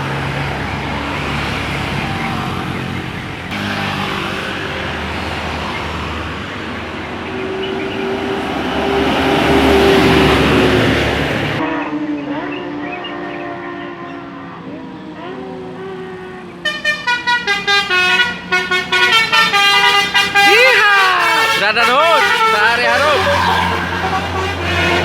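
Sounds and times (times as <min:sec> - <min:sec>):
bus engine and tyres passing: 0:00.0 - 0:25.0
multi-tone bus horn melody: 0:00.0 - 0:25.0
held bus horn tone: 0:05.6 - 0:25.0.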